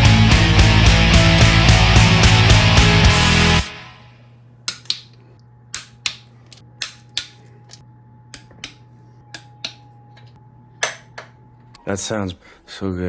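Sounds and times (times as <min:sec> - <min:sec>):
rock music: 0:00.0 - 0:03.9.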